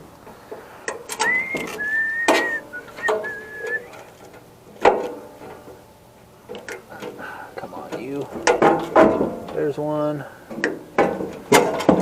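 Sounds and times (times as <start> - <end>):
person whistling: 1.2 - 3.9.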